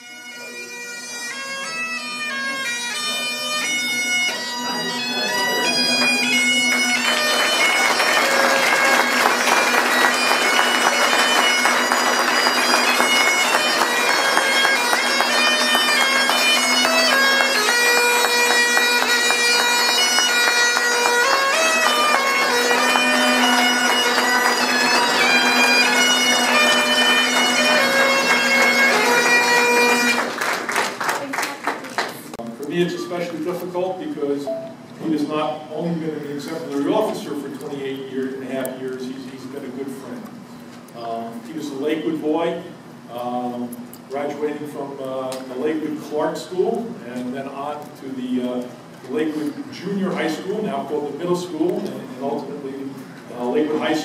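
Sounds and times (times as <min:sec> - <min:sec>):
bagpipe playing a tune: 0:00.0 - 0:30.5.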